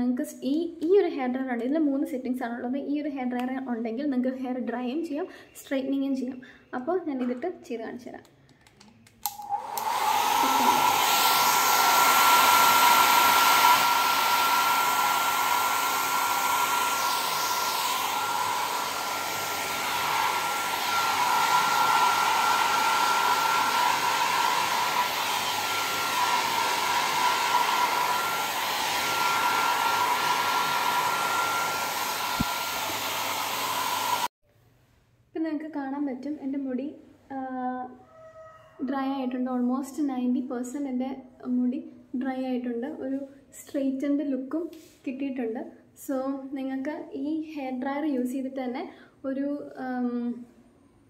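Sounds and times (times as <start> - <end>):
hair dryer blowing with high whine: 9.2 - 34.4.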